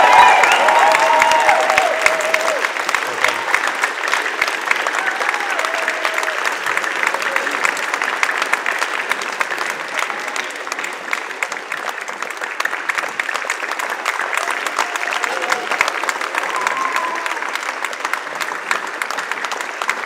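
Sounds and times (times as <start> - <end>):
audience applauding: 0.0 - 20.0.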